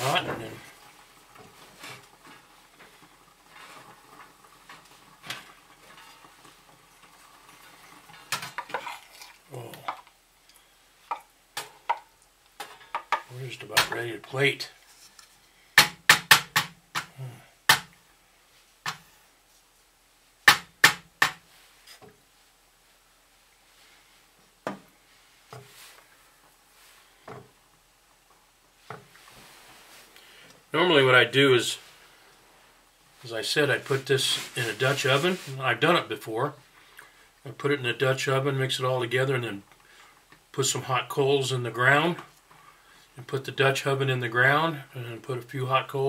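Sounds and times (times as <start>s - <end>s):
soup simmering with pops: 0.0s - 18.2s, 24.4s - 30.7s, 36.6s - 37.5s, 39.6s - 43.2s.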